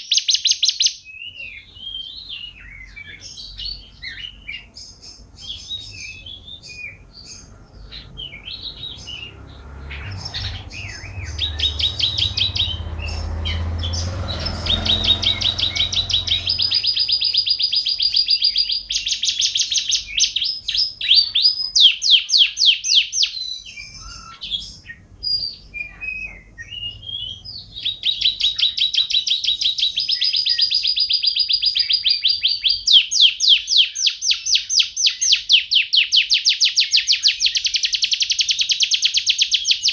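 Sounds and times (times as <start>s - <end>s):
canary singing trills: 0.0s - 39.9s
low rumble: 7.5s - 17.3s.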